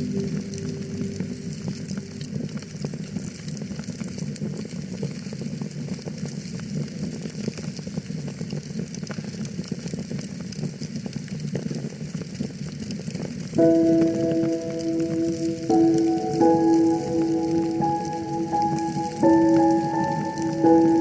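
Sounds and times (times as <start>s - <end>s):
held musical note: 0.0s - 2.9s, 13.6s - 21.0s.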